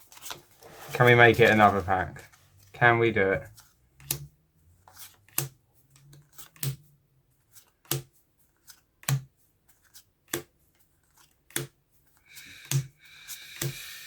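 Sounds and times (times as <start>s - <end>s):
cards sliding rustles: 0.0s - 2.7s, 3.6s - 6.8s, 7.4s - 14.0s
trading cards snapping: 5.0s - 5.6s, 11.2s - 11.7s.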